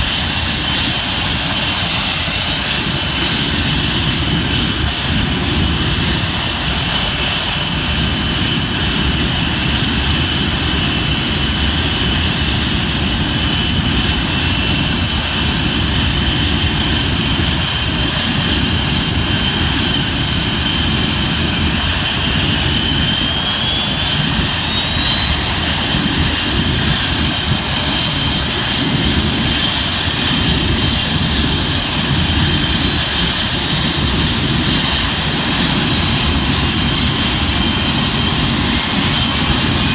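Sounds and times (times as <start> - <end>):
jet engine rumble with whine: 0.0 - 39.9
whine rising in pitch: 15.0 - 39.9.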